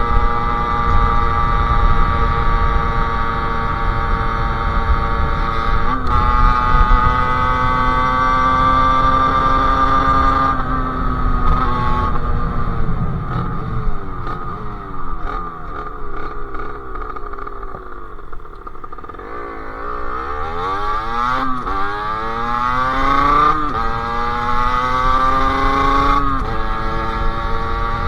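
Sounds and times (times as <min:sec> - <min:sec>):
two-stroke motorcycle engine accelerating: 0:00.0 - 0:28.0.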